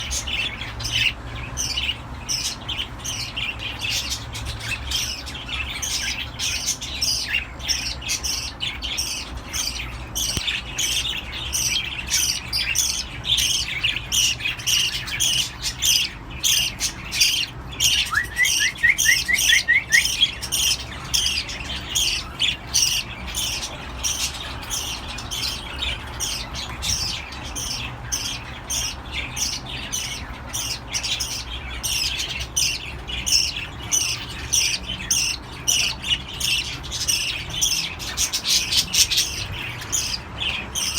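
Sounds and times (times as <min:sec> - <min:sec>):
cockatiels squawking: 0:00.0 - 0:40.9.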